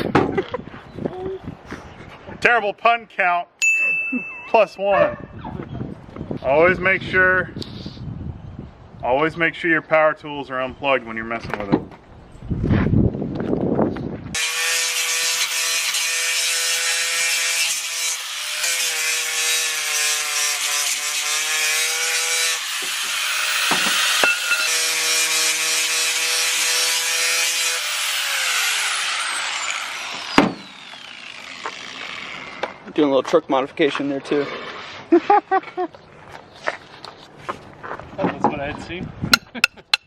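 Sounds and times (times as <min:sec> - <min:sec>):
angle grinder grinding steel: 0:14.4 - 0:32.8
sharp knock: 0:30.4 - 0:30.7.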